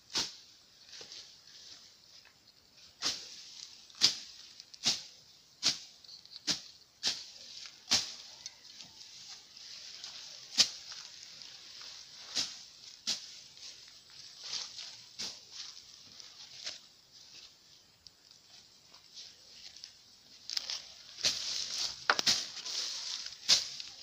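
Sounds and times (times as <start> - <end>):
footsteps crunching on trail: 7.4 - 24.0.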